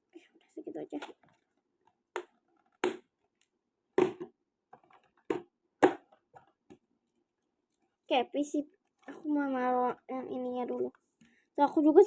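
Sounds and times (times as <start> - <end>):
small items tapping on hard surface: 4.0 - 6.9.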